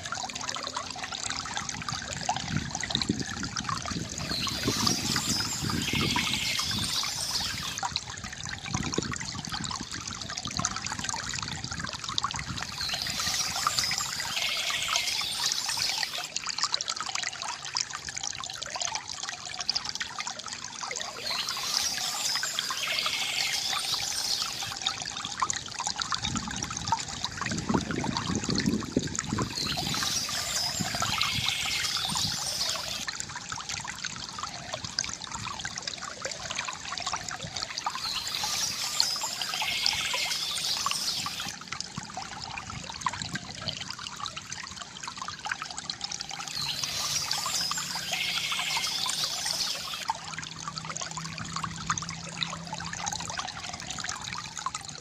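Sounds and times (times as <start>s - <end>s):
water gurgle: 0.0s - 55.0s
water trickling from fountain spout: 0.0s - 55.0s
birds chirping: 4.2s - 7.8s, 12.6s - 16.3s, 21.0s - 24.8s, 29.4s - 33.0s, 37.8s - 41.5s, 46.5s - 50.0s.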